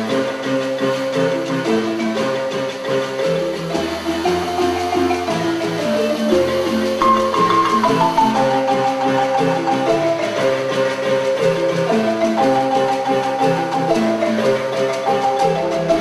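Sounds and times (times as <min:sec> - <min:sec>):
tune of clear pitched notes: 0:07.0 - 0:09.2.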